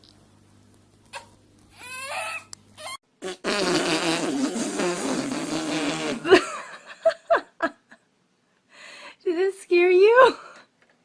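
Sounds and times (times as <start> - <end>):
baby crying: 1.2 - 3.0
long fart: 3.2 - 6.4.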